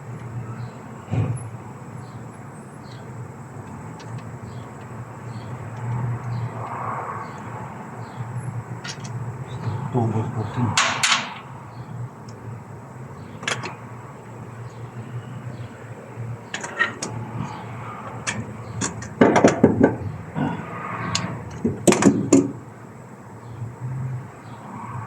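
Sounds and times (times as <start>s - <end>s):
metal tools clinking: 8.8s - 9.2s, 10.8s - 11.5s, 16.6s - 17.6s
loud rattling: 10.7s - 11.8s.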